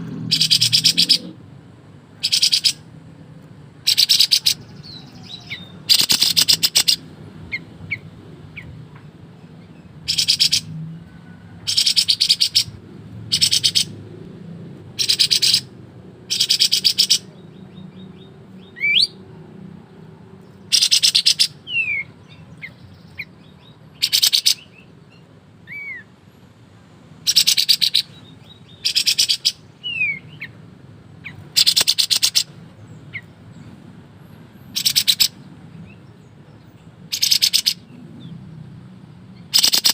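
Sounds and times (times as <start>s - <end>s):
bird rattling trills: 0.2s - 1.4s, 5.9s - 7.0s, 13.3s - 13.9s, 31.5s - 32.5s, 34.7s - 35.4s, 37.1s - 37.8s, 39.5s - 39.9s.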